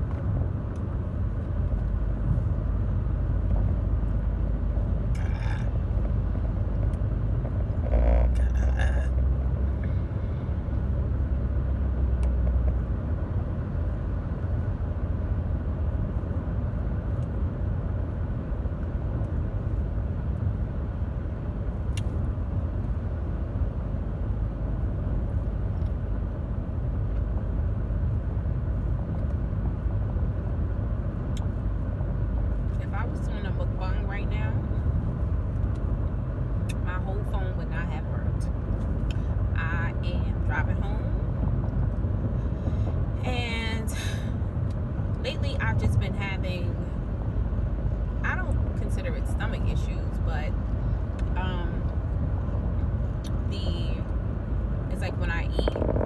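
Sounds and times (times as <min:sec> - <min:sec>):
car road and engine rumble: 0:00.0 - 0:56.0.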